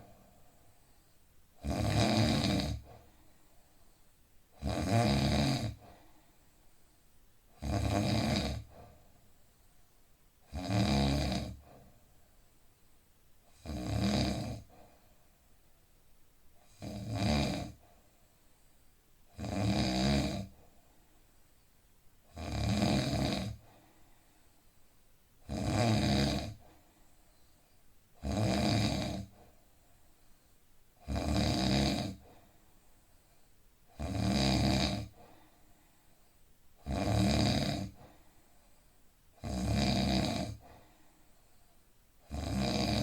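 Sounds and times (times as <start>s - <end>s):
man snoring loudly: 1.6s - 2.9s, 4.6s - 5.8s, 7.6s - 8.7s, 10.5s - 11.6s, 13.6s - 14.7s, 16.8s - 17.8s, 19.4s - 20.5s, 22.3s - 23.6s, 25.5s - 26.6s, 28.2s - 29.3s, 31.0s - 32.2s, 34.0s - 35.2s, 36.8s - 38.0s, 39.4s - 40.6s, 42.3s - 43.0s.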